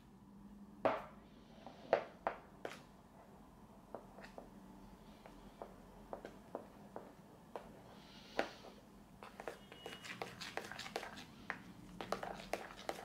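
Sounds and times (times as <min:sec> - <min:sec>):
slime stirred with wet pops: 0:09.2 - 0:13.0.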